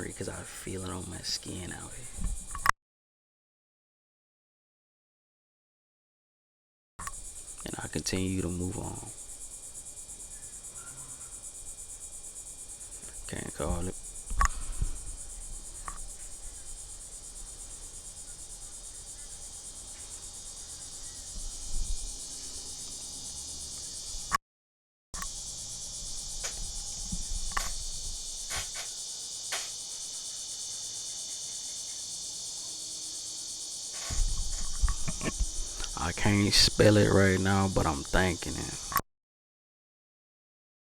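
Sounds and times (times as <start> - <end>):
insects chirring: 0.0 - 2.7, 7.0 - 24.4, 25.2 - 39.0.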